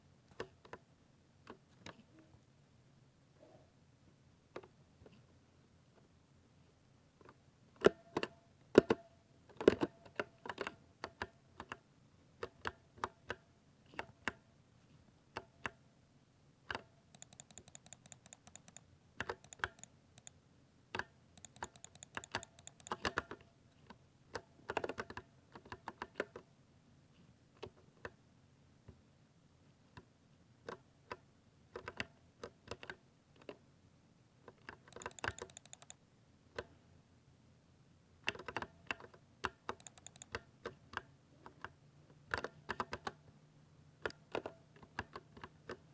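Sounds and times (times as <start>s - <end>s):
mechanical keyboard typing: 17.1s - 20.4s, 21.4s - 23.3s, 34.9s - 36.0s, 39.7s - 40.5s.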